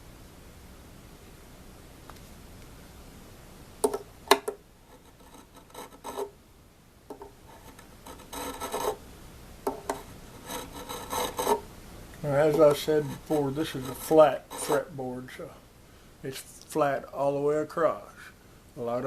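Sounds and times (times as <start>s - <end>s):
file rasping on metal fret: 4.9s - 6.3s, 7.4s - 9.0s, 9.7s - 11.6s, 12.4s - 15.0s.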